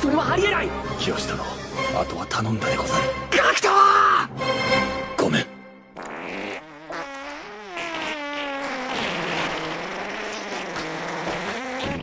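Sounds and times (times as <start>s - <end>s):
long fart sound: 5.8s - 12.0s.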